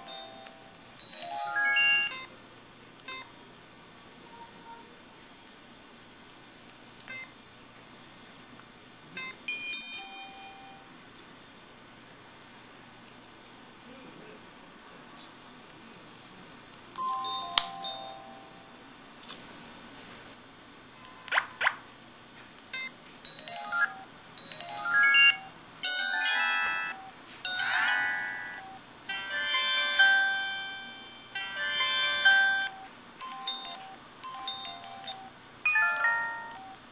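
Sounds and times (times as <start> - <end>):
overlapping chime-like tones: 0.0 - 2.2, 23.3 - 36.7.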